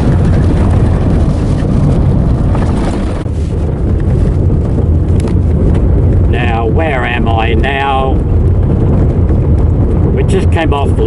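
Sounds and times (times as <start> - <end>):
knocks and rattles: 0.0 - 6.4
car rumbling on dirt road: 0.0 - 11.0.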